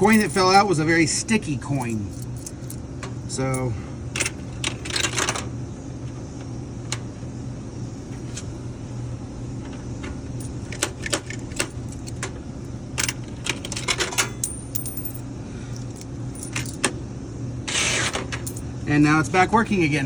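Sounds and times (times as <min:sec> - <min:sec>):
coins clinking: 0:00.0 - 0:00.6, 0:13.0 - 0:16.9, 0:17.8 - 0:18.7
steady low hum: 0:00.0 - 0:20.0.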